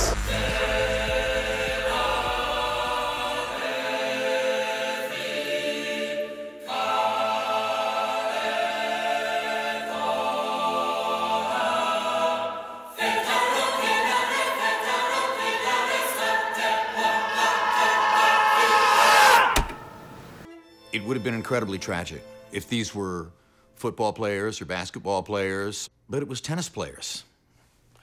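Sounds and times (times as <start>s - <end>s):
choir singing sustained chords: 0.0s - 20.6s.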